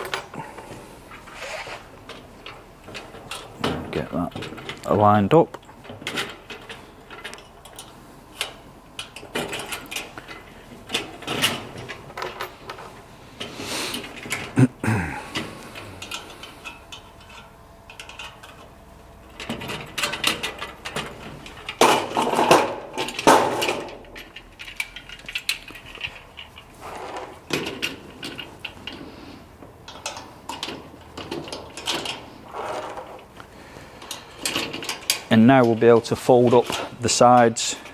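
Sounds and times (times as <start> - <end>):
cart panels clattering and knocking: 2.5 - 4.8, 19.4 - 28.9, 29.9 - 33.2.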